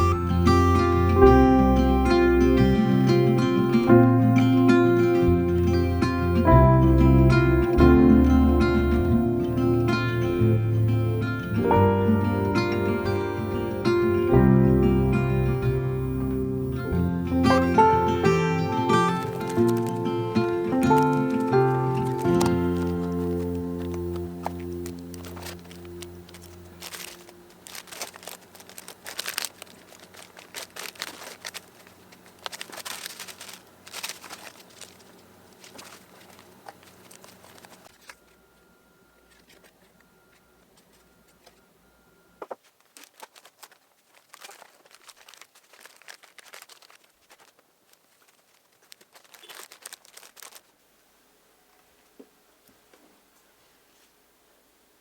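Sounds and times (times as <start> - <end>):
background music: 0.0 - 26.9
packaging crinkling and rustling: 18.9 - 38.6, 39.2 - 41.7, 42.4 - 50.9.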